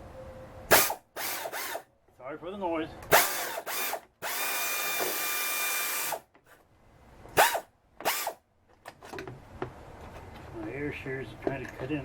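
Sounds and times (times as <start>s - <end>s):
pneumatic air shears cutting metal: 0.7s - 1.9s, 3.1s - 6.2s, 7.4s - 8.4s.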